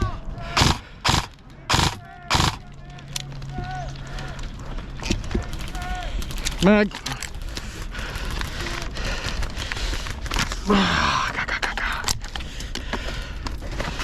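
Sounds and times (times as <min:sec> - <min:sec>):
sharp clicks: 0:00.6 - 0:02.6, 0:05.5 - 0:10.7, 0:11.7 - 0:12.4
rustling and scraping of gear: 0:03.2 - 0:10.7.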